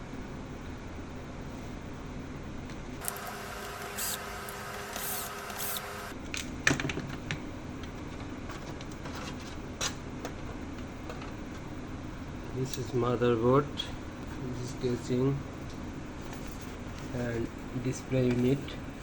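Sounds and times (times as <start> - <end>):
steady hum: 0.0 - 6.3.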